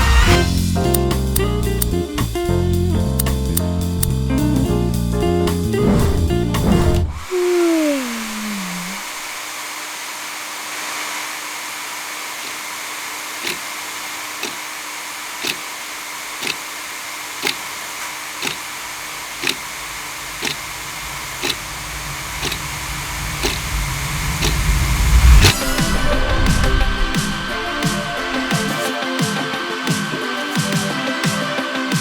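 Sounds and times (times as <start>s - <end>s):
low rumble: 5.6s - 9.3s, 19.7s - 28.8s
hair dryer blowing: 6.6s - 30.8s
sharp ticking: 19.4s - 25.6s.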